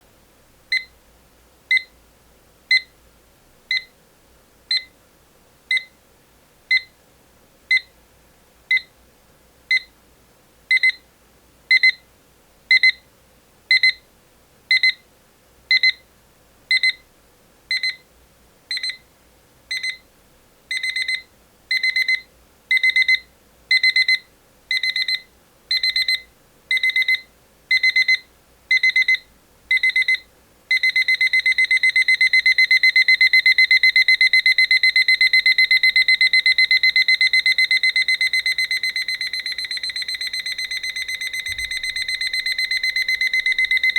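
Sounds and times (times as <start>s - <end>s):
alarm clock beeping: 28.8s - 43.9s.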